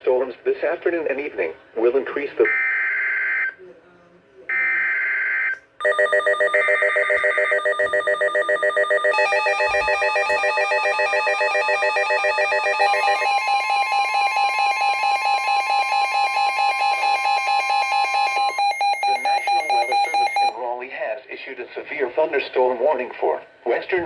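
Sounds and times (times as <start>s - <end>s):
steady warning tone: 5.8s - 20.6s
pulsing electronic beeping: 7.9s - 20.5s.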